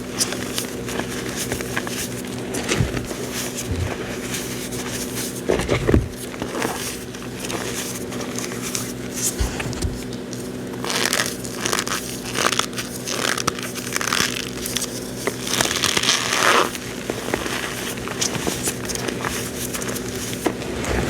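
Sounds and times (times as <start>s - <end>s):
steady low hum: 0.0s - 10.6s, 18.0s - 21.0s
cornstarch squeaky crunching: 0.0s - 21.0s.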